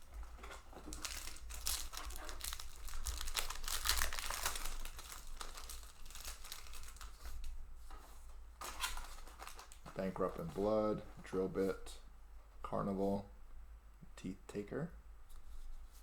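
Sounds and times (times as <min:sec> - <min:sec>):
foil wrapper crinkling and tearing: 0:00.0 - 0:07.6, 0:08.6 - 0:10.7.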